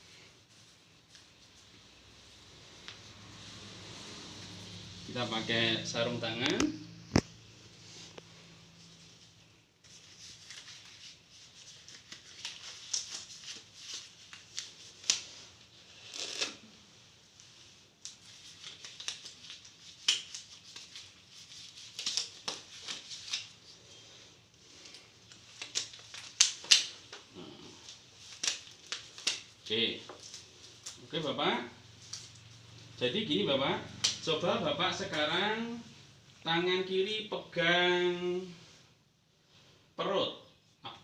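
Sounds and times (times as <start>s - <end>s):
gloves rustling: 0.0s - 4.8s, 6.2s - 36.0s
gloves snapping: 20.0s - 20.9s, 25.3s - 27.3s, 28.3s - 29.5s.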